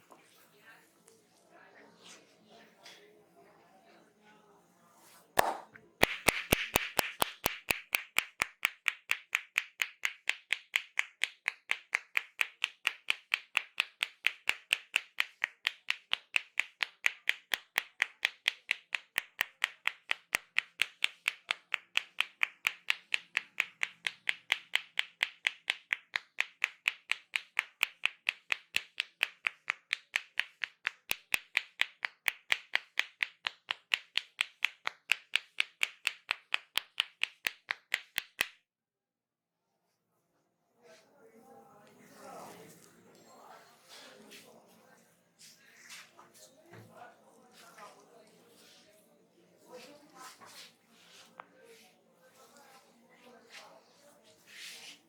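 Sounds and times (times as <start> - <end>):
rapid hand slaps: 5.4 - 38.6.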